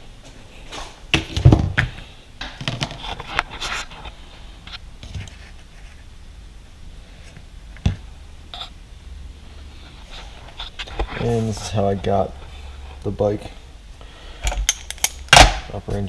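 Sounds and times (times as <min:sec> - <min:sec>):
tools clicking and scraping: 0:14.4 - 0:15.3.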